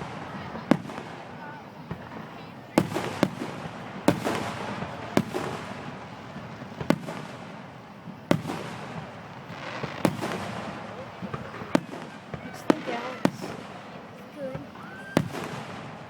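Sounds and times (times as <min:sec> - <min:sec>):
fireworks booming and crackling: 0:00.0 - 0:16.0.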